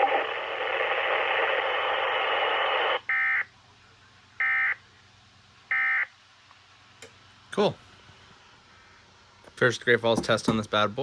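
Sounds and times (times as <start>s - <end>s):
radio receiver hiss: 0.0s - 3.1s.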